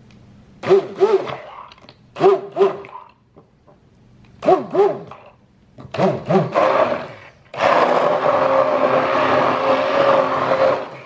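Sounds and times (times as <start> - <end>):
electric mixer running: 6.0 - 11.0.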